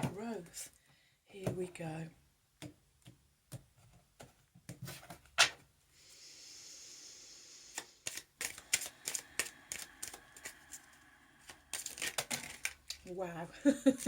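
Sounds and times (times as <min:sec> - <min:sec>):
cards sliding hiss: 0:06.1 - 0:12.3
cards slapping: 0:07.7 - 0:13.0
cards being shuffled by hand: 0:07.7 - 0:13.1.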